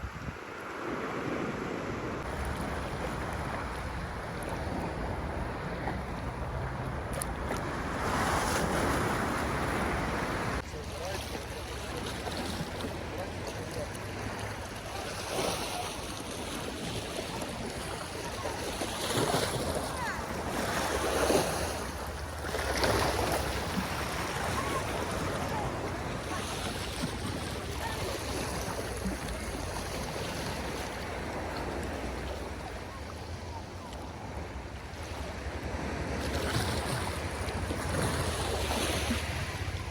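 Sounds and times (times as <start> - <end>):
wind buffeting microphone: 0.0 - 10.6
sea waves splashing: 0.0 - 39.9.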